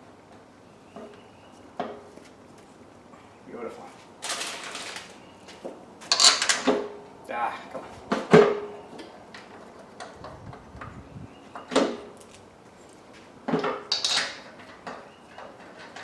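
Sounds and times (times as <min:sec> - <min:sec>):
metal parts clinking and knocking: 0:06.1 - 0:06.8, 0:13.9 - 0:16.0.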